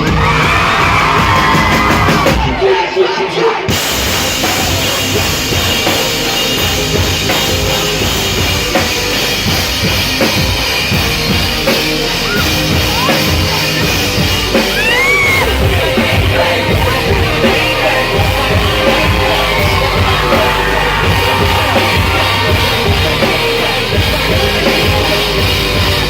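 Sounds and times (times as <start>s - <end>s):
live rock band playing: 0.0s - 2.7s, 3.7s - 26.0s.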